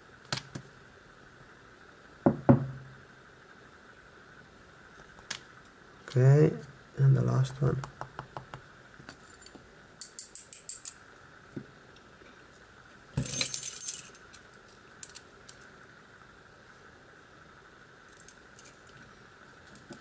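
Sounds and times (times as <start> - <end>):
small metal parts clinking: 9.1 - 11.0, 13.2 - 15.7, 18.1 - 18.9.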